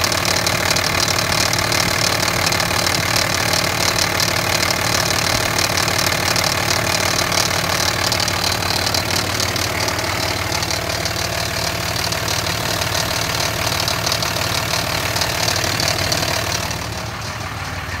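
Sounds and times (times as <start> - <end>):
diesel engine idling: 0.0 - 18.0
fast rattling ticking: 0.0 - 18.0.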